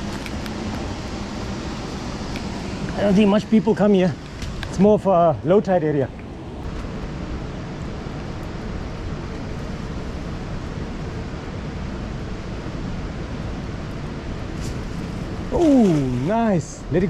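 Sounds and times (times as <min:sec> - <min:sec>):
wind: 0:00.0 - 0:17.0.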